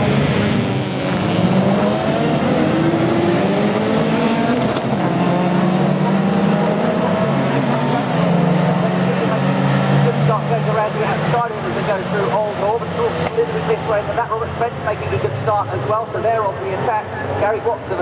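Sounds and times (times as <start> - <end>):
race car engines accelerating: 0.0 - 18.0.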